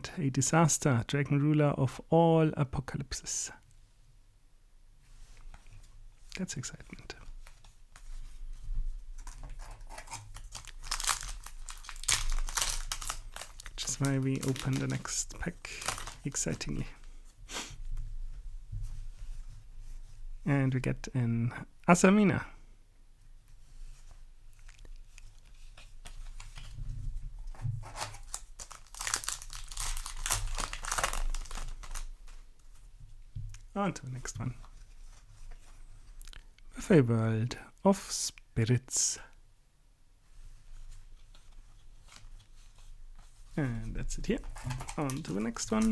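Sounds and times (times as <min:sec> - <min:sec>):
wrapper ripping: 0:09.2 - 0:16.7, 0:27.8 - 0:32.4, 0:44.4 - 0:45.9
foil wrapper crinkling: 0:09.2 - 0:16.9, 0:27.8 - 0:32.4, 0:44.4 - 0:45.9.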